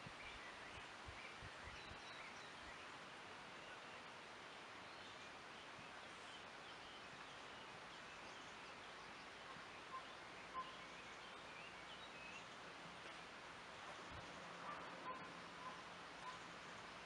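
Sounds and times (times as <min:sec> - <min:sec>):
bird chirps: 0:09.5 - 0:12.5.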